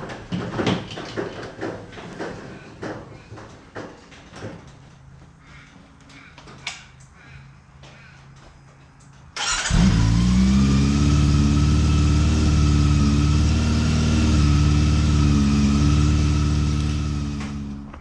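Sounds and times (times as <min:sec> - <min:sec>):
motorcycle engine starting and idling: 0:09.4 - 0:18.0.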